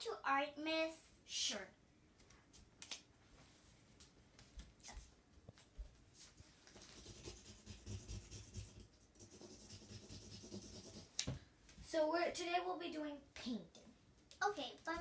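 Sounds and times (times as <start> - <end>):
pencil scratching on paper: 6.8 - 11.1.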